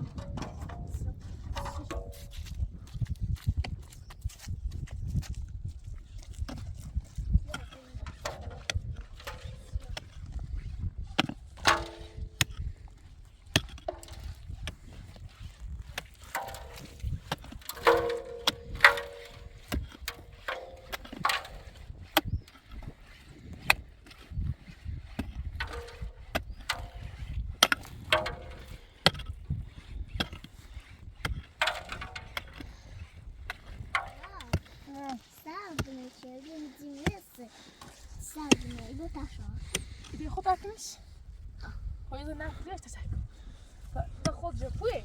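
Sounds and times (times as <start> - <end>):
objects knocking and clicking: 0.0 - 5.4, 6.4 - 36.2.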